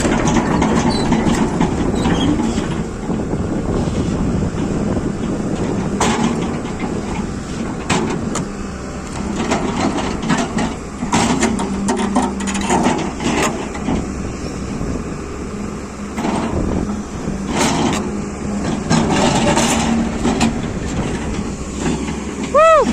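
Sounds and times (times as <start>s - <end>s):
metallic clanks and knocks: 0.0s - 2.9s, 5.6s - 8.5s, 9.1s - 14.1s
heavy machine engine hum: 0.0s - 22.9s.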